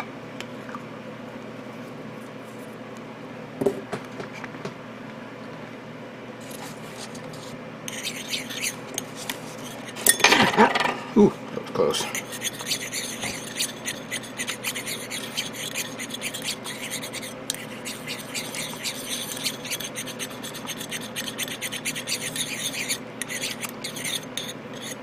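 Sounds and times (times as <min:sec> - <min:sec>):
stirrer scraping inside a cup: 0:06.5 - 0:10.1, 0:11.9 - 0:25.0.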